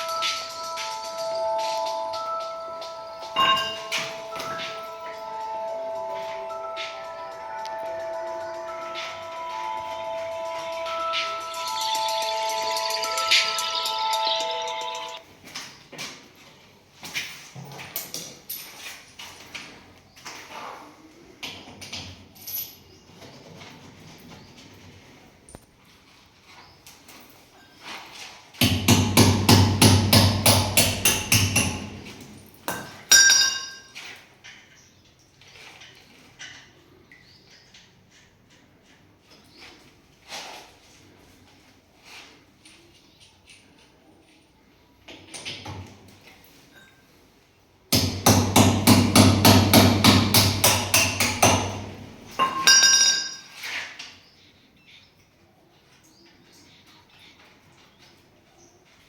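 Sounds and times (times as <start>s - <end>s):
ringing metallic clink: 3.3s - 5.1s, 30.9s - 33.9s
hammer blows on metal: 28.6s - 32.8s.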